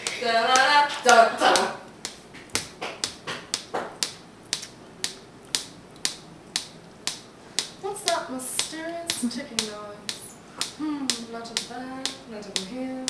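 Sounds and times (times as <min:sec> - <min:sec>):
person speaking: 0:00.0 - 0:01.9
steady sharp ticking: 0:00.0 - 0:13.0.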